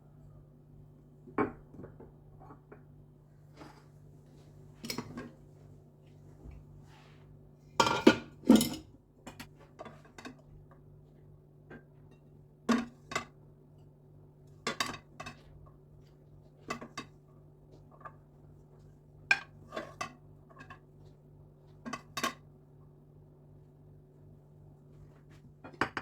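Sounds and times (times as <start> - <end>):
faint low hum: 0.0 - 12.2.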